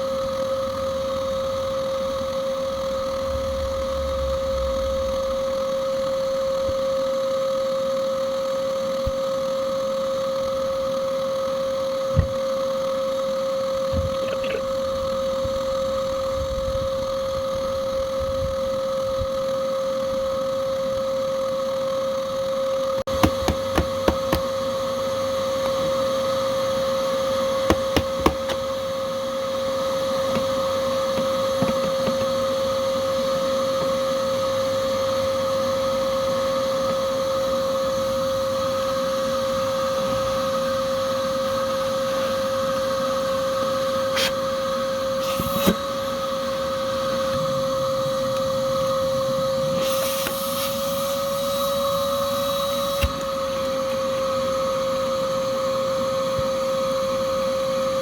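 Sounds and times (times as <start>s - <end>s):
vacuum motor humming: 0.0s - 58.0s
sharp clicks and knocks: 23.1s - 24.6s, 27.7s - 28.7s, 30.3s - 32.3s.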